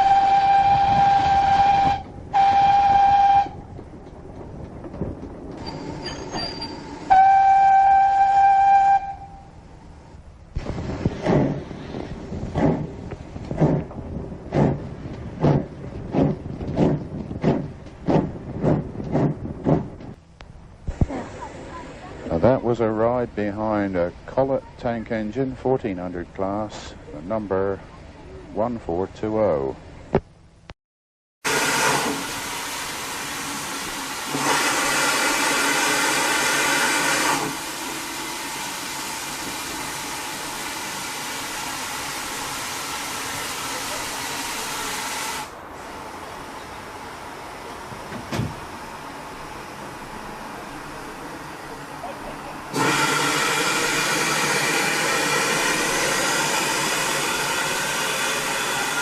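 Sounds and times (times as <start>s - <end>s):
steady rumble: 0.1s - 6.1s, 9.2s - 25.2s
steam engine puffing: 10.6s - 19.9s, 31.5s - 46.1s, 52.7s - 59.0s.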